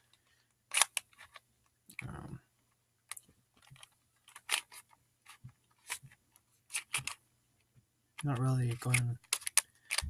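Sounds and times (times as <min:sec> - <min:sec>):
plastic puzzle layers clicking: 0:00.2 - 0:02.2, 0:03.1 - 0:07.2, 0:08.2 - 0:10.0.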